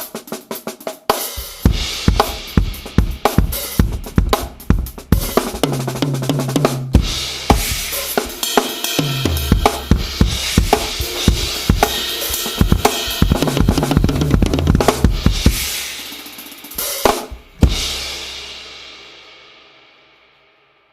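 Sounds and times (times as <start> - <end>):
drum kit hits: 1.4 - 18.6
cymbals washing: 7.0 - 17.1.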